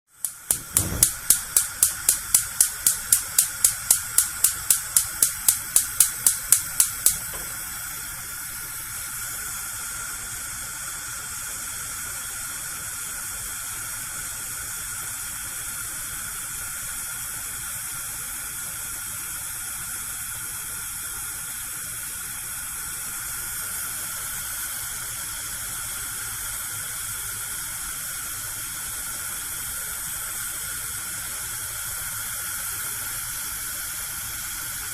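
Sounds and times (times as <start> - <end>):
spark igniter clicking: 0.1 - 7.7
gas hissing: 0.1 - 11.3, 22.4 - 34.9.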